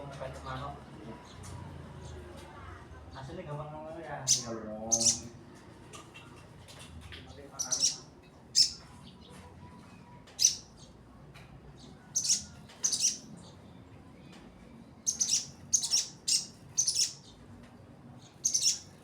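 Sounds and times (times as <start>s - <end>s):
bird chirping: 4.2s - 5.4s, 7.5s - 9.3s, 10.4s - 11.0s, 11.8s - 13.6s, 15.0s - 17.4s, 18.2s - 19.0s.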